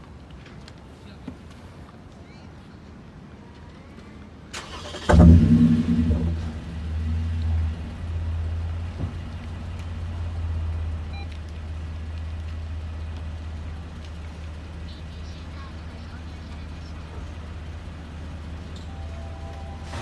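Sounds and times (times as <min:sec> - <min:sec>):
car engine starting and idling: 0:04.6 - 0:20.0.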